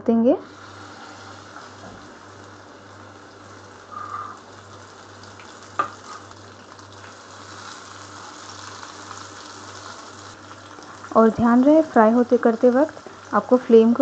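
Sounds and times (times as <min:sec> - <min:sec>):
food sizzling in hot oil: 0:00.4 - 0:14.0.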